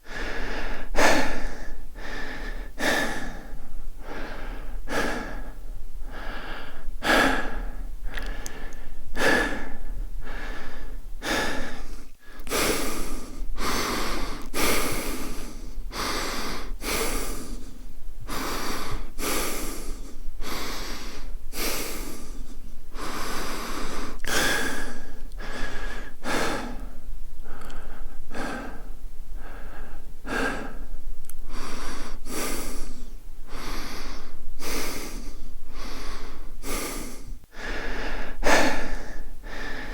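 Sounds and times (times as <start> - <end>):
man breathing fast and hard: 0.0 - 39.9.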